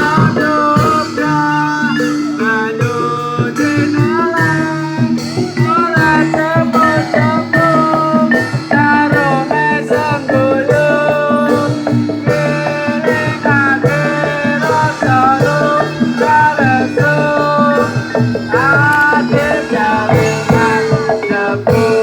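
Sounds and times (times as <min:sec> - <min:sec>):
melody of sliding bending notes: 0:00.0 - 0:22.0
percussion beat: 0:00.0 - 0:22.0.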